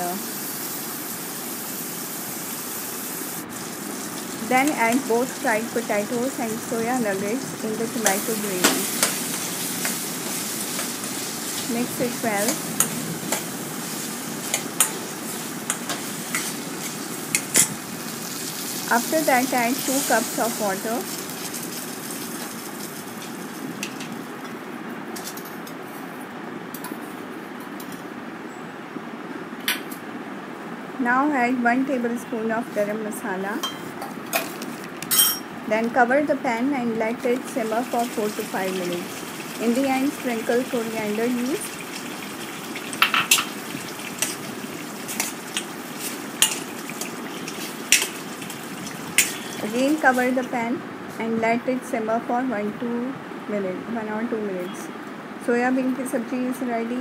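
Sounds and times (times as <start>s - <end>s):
sizzling bubbling pan: 0.0s - 25.5s, 33.5s - 50.8s
curry bubbling in a pan: 37.6s - 50.2s.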